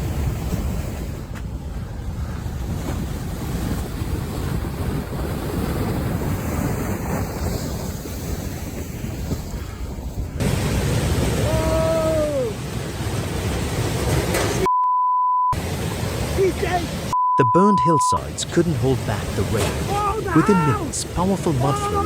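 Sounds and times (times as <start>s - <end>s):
rushing floodwater: 0.0s - 14.7s, 15.6s - 22.0s
wind buffeting microphone: 0.0s - 14.7s.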